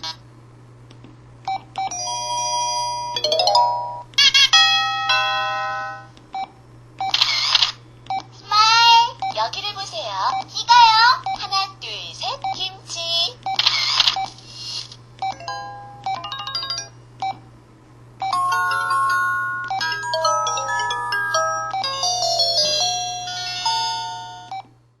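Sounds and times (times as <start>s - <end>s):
bell-like ringtone melody: 1.9s - 6.1s, 15.3s - 16.9s, 18.3s - 24.5s.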